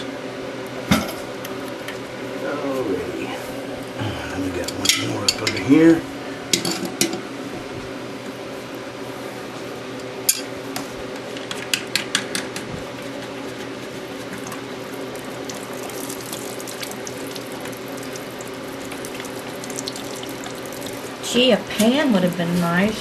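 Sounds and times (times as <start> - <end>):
water trickling from toilet tank: 15.2 - 21.1.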